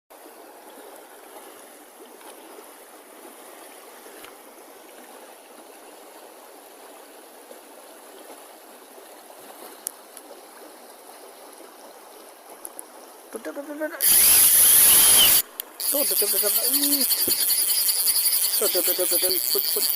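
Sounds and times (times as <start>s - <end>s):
stream water flowing: 0.1s - 19.9s
sharp click: 14.0s - 19.9s.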